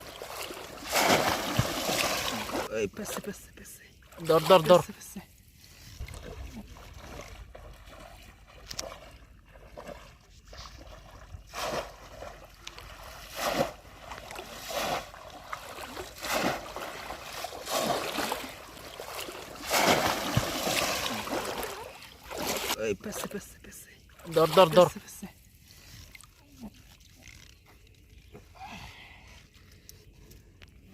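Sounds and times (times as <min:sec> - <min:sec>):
splashing in shallow water: 0:00.0 - 0:03.3, 0:03.9 - 0:23.3.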